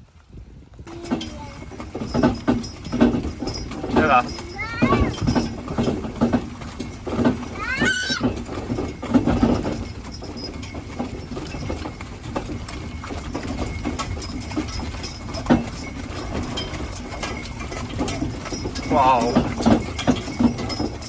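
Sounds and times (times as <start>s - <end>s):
horse hooves clip-clopping: 0.0s - 21.0s
wagon rumble: 0.2s - 21.0s.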